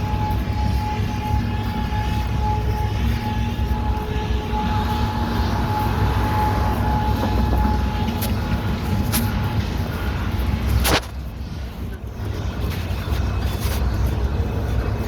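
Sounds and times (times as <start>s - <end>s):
steady siren note: 0.0s - 10.3s
heavy low rumble: 0.0s - 15.0s.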